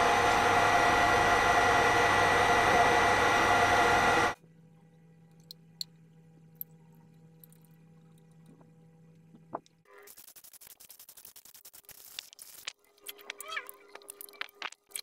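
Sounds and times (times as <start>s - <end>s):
milling machine whining: 0.0s - 4.4s
faint low hum: 4.4s - 10.1s.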